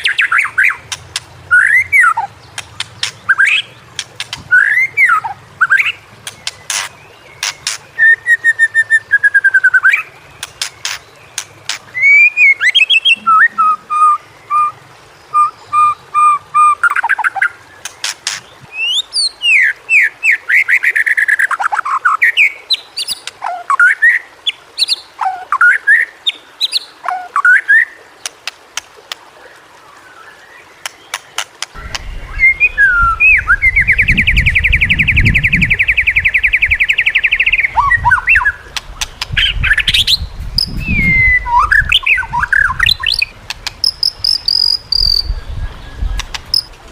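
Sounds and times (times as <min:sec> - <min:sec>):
songbird singing: 0:00.0 - 0:28.7, 0:29.4 - 0:46.9
buzzy bird trill: 0:39.1 - 0:46.7.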